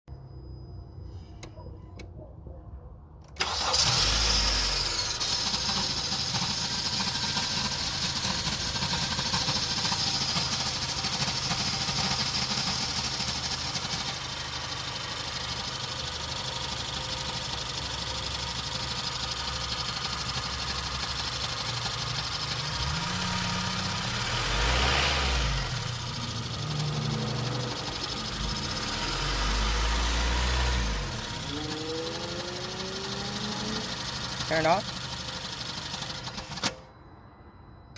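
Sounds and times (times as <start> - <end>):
car engine running: 3.4 - 36.6
engine grinding noise: 21.1 - 36.6.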